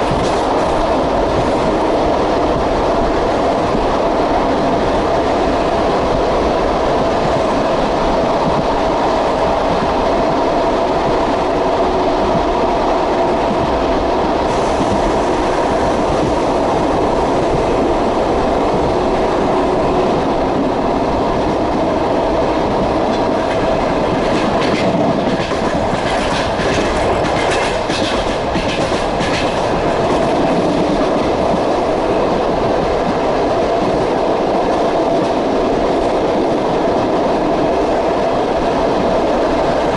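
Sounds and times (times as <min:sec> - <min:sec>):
train rolling rumble: 0:00.0 - 0:39.9.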